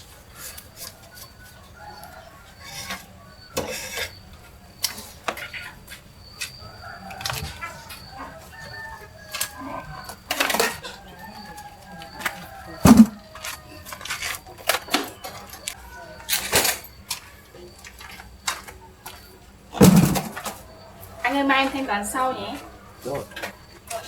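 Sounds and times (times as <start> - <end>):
objects knocking and clattering: 12.8 - 13.4, 19.7 - 20.7
heavy thud: 12.9 - 13.2, 19.8 - 20.4.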